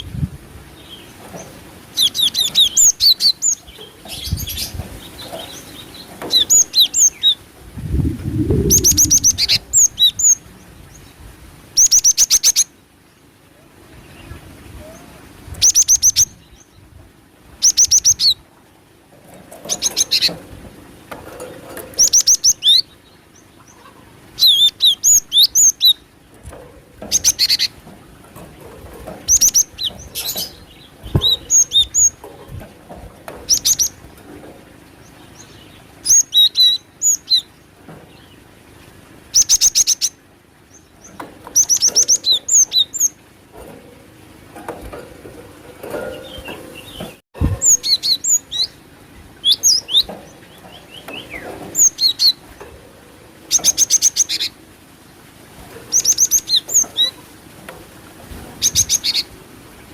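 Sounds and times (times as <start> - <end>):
bird calls of rapid high chirps: 0.8 - 7.4, 8.3 - 11.0, 11.8 - 12.7, 17.6 - 18.4, 19.6 - 20.4, 21.9 - 26.0, 27.0 - 27.8, 29.3 - 32.4, 39.3 - 43.8, 49.4 - 52.5, 53.5 - 54.6, 55.9 - 57.2.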